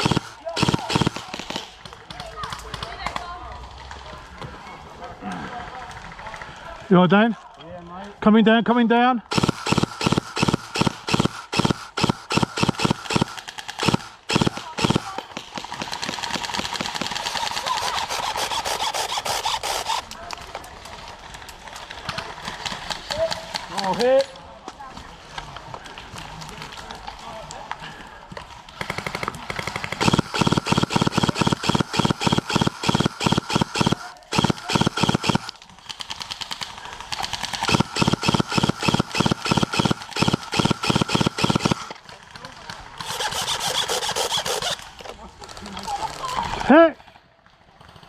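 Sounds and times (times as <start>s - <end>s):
airsoft guns firing: 0.0s - 3.4s, 9.2s - 20.2s, 28.5s - 45.0s.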